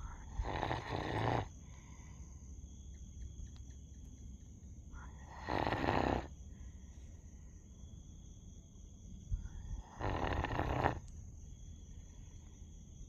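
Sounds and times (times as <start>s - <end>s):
dog snoring: 0.2s - 1.5s, 5.1s - 6.4s, 9.8s - 11.1s.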